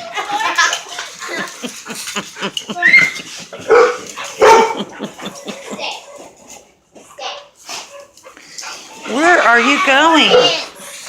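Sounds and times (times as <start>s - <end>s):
dog barking and yipping: 2.9s - 6.3s, 9.0s - 11.0s.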